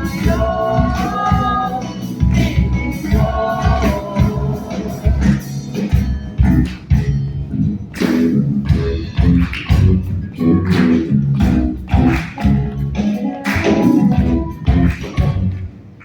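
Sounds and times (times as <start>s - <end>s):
plucked guitar with bass notes: 5.1s - 15.7s.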